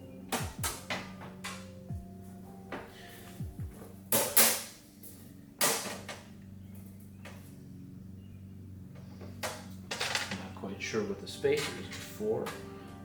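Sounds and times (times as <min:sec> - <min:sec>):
metal knocks and rattles: 0:09.0 - 0:10.6.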